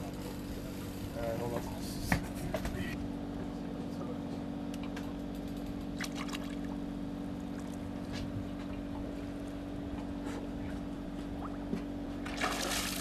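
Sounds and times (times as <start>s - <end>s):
boat engine droning: 0.0s - 13.0s.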